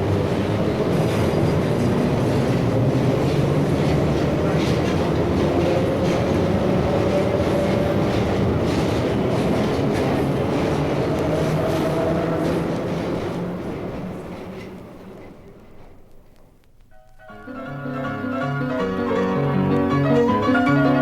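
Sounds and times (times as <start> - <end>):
train rumbling on rails: 0.0 - 16.6.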